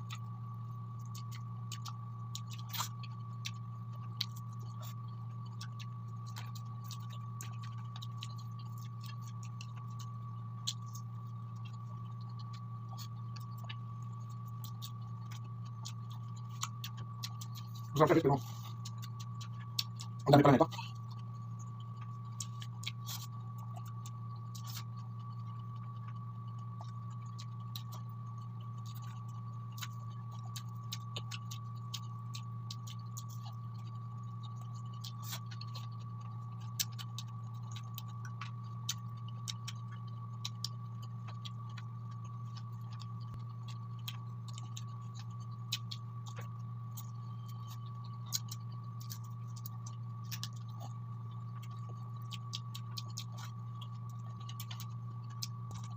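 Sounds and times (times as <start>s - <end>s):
steady low hum: 0.0s - 55.9s
chewing mouth sounds: 0.9s - 55.9s.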